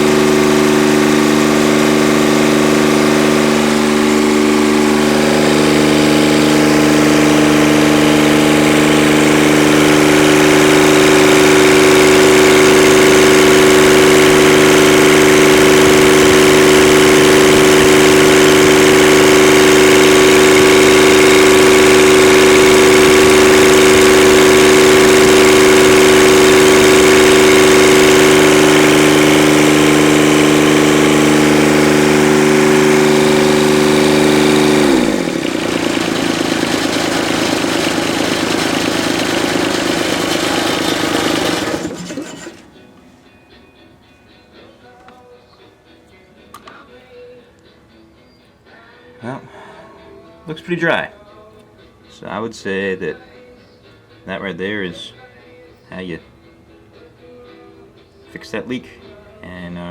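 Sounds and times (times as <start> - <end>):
diesel engine running steadily: 0.0 - 42.8.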